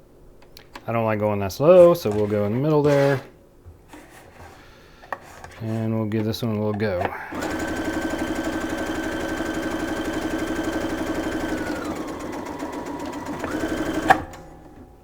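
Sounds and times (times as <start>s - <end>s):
sewing machine stitching: 2.1s - 3.3s, 7.3s - 14.8s
sewing machine stop click: 7.3s - 14.9s.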